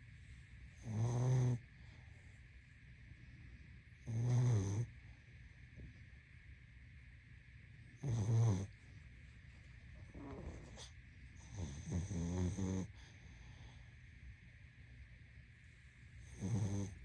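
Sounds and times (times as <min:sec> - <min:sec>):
dog snoring: 0:00.7 - 0:02.0, 0:04.0 - 0:05.0, 0:07.9 - 0:08.8, 0:10.0 - 0:13.8, 0:16.1 - 0:17.0.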